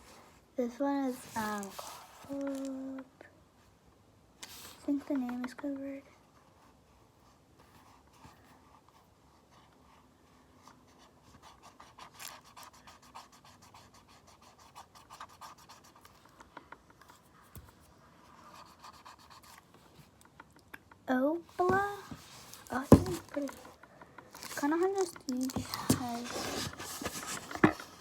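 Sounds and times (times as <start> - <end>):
makeup palette case handled: 21.6 - 23.7, 24.4 - 28.0.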